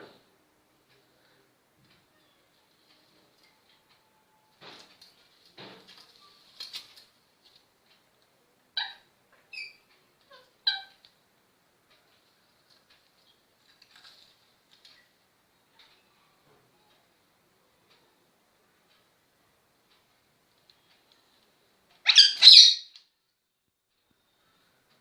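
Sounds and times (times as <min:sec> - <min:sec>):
parrot pitched calls: 0:08.8 - 0:11.0, 0:22.0 - 0:23.0
parrot squawking: 0:08.8 - 0:11.0, 0:22.0 - 0:23.0.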